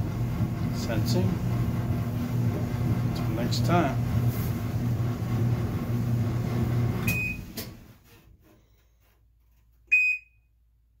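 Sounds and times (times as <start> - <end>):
dryer humming: 0.0 - 8.7
control panel beep: 9.9 - 10.4.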